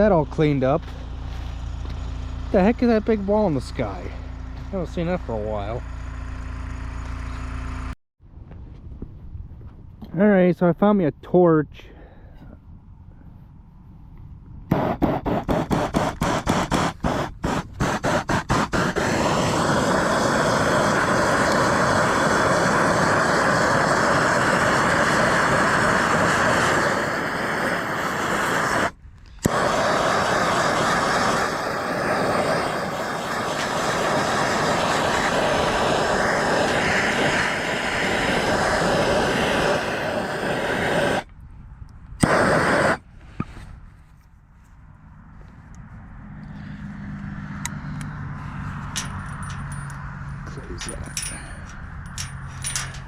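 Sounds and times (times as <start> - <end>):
torch sputtering pops: 14.7 - 41.3, 42.2 - 43.6
torch flame roar: 14.7 - 41.4, 42.2 - 43.1.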